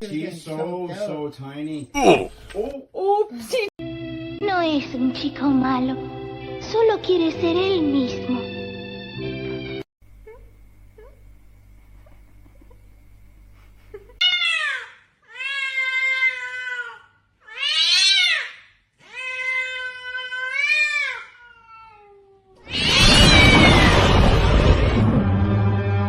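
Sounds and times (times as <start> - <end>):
cat meowing: 14.2 - 18.5, 19.1 - 24.1
loud burst of noise: 22.7 - 26.0.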